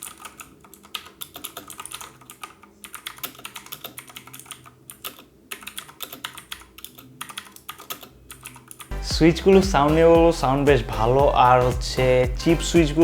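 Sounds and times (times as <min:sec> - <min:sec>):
clicky mechanical keyboard typing: 0:00.0 - 0:08.9.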